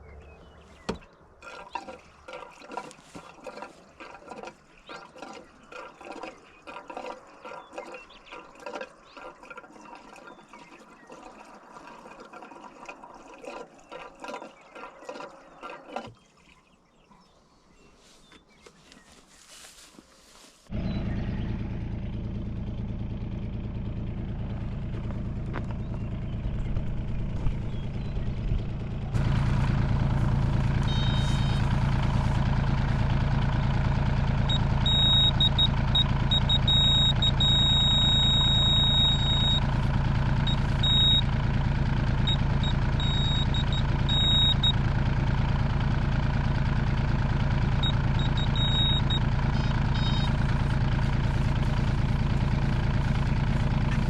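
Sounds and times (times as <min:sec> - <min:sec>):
excavator diesel engine running: 0:20.7 - 0:54.0.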